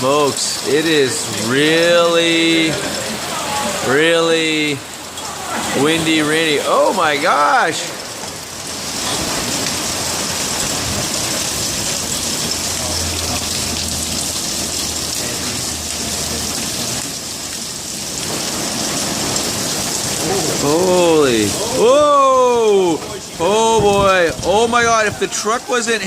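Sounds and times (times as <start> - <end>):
heavy rain hissing: 0.0 - 26.0
low wind rumble: 21.3 - 25.7.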